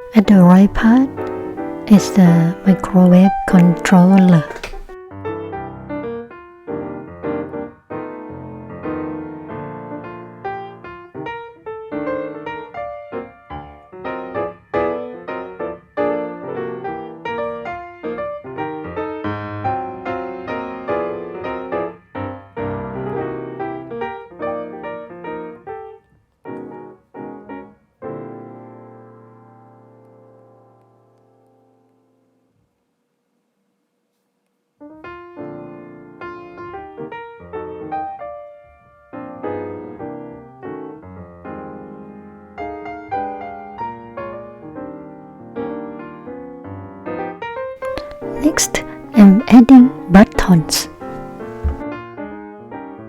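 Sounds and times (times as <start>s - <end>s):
piano music: 0.0s - 5.0s.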